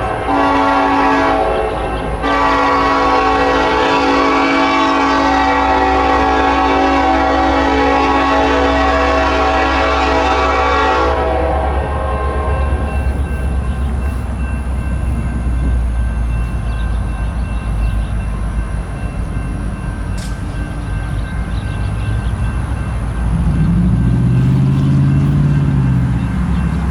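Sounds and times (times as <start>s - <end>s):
train air horn: 0.0s - 13.1s
train rumbling past: 0.0s - 26.9s.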